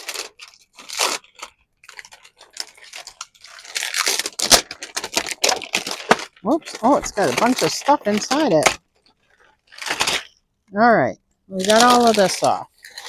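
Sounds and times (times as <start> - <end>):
plastic packaging crinkling: 0.0 - 10.4, 11.5 - 13.0.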